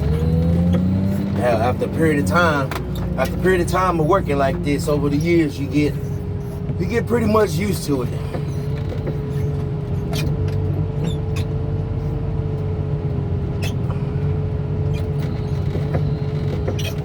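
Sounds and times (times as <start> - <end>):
constant whine: 0.0 - 17.0
heavy equipment engine droning: 0.0 - 17.0.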